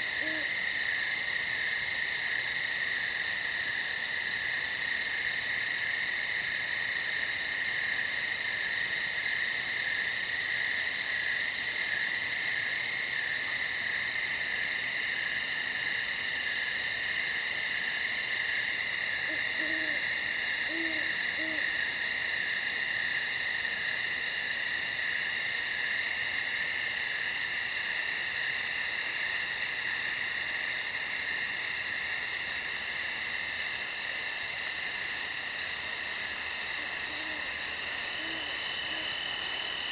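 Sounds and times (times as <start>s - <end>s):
high-pitched insect chorus: 0.0s - 39.9s
owl hooting: 0.2s - 0.5s, 19.3s - 20.1s, 20.7s - 21.6s, 36.8s - 39.1s.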